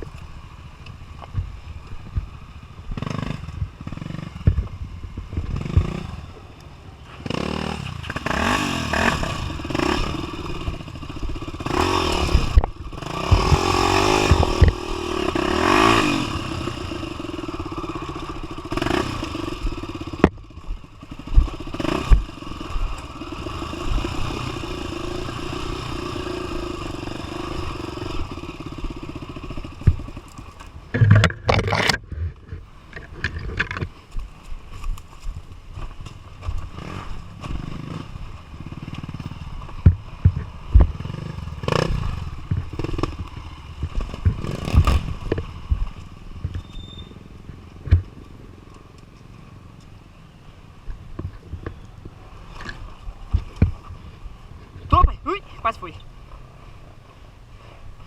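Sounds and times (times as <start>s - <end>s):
dirt bike engine revving: 2.8s - 33.8s, 36.4s - 49.0s.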